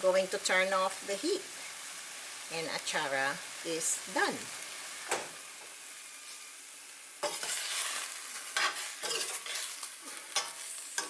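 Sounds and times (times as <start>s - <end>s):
hot liquid sizzling hiss: 0.0s - 11.0s
utensil scraping in pot: 7.2s - 11.0s.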